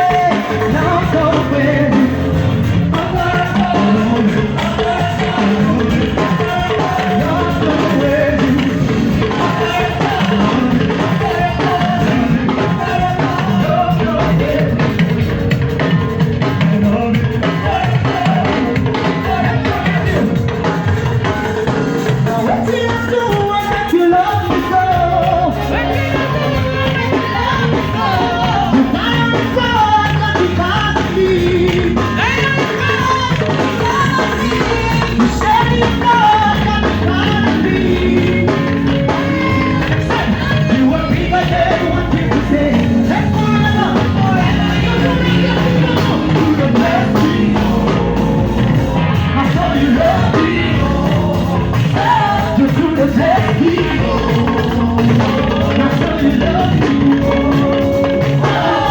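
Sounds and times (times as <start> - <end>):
upbeat gospel band music: 0.0 - 58.9
singing over dance beat: 22.3 - 58.9.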